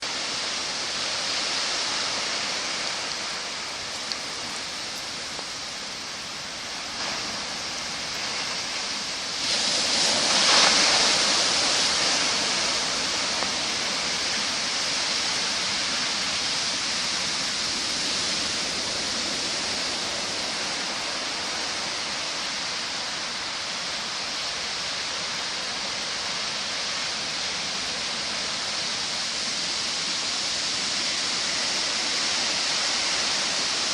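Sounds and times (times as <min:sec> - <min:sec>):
heavy surf breaking: 0:01.2 - 0:23.4.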